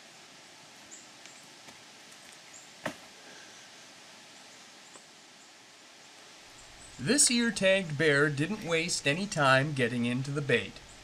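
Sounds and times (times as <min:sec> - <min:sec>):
steady hiss: 0:00.0 - 0:11.0.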